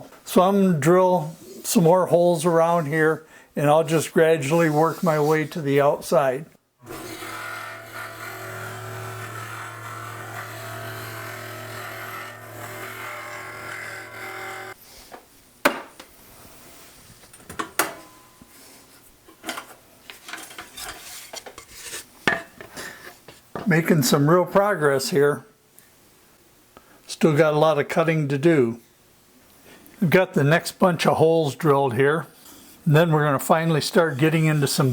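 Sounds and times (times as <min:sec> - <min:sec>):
electric drill drilling wood: 0:06.8 - 0:14.8.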